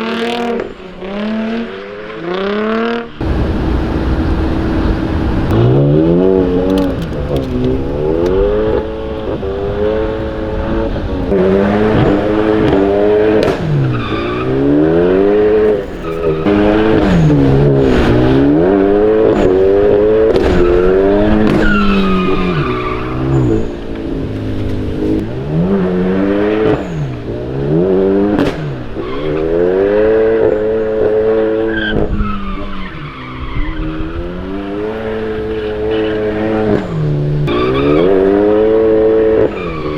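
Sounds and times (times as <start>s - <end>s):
car engine revving hard: 0.0s - 39.9s
tyre squeals: 11.4s - 19.7s, 20.3s - 25.2s, 29.0s - 39.9s.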